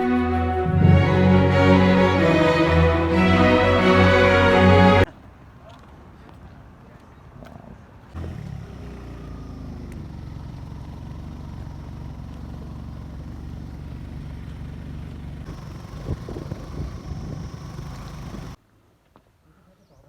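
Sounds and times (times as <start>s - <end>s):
vehicle engine running: 9.3s - 18.5s.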